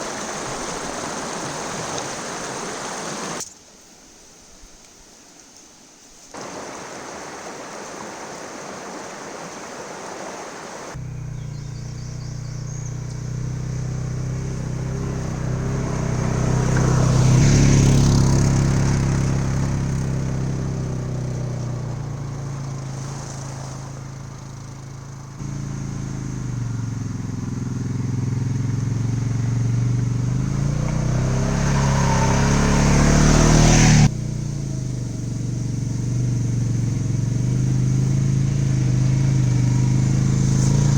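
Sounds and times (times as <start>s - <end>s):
atv engine running: 10.9s - 40.9s.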